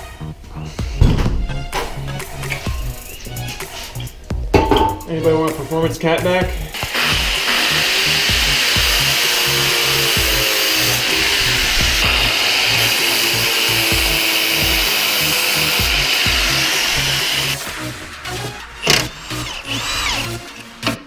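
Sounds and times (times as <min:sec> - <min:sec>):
background music with bass beat: 0:00.0 - 0:21.0
power tool grinding hiss: 0:05.7 - 0:21.0.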